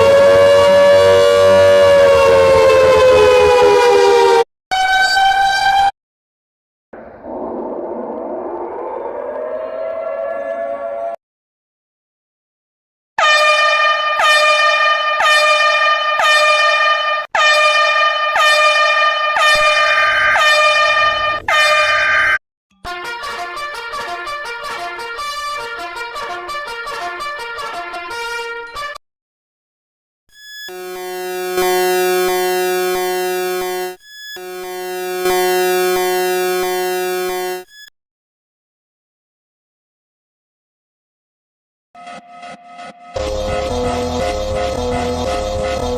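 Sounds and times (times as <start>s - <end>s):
buzzy electronic alarm tone: 0.0s - 4.4s, 30.4s - 37.9s, 42.0s - 45.9s
horn-like alarm blasts: 0.0s - 5.9s, 13.2s - 29.0s, 30.6s - 37.9s, 42.0s - 45.9s.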